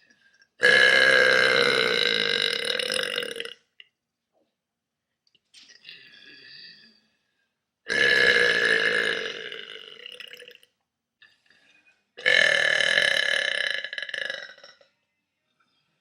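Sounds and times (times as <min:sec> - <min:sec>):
person burping: 0:00.6 - 0:03.6, 0:07.9 - 0:10.6, 0:12.2 - 0:14.8.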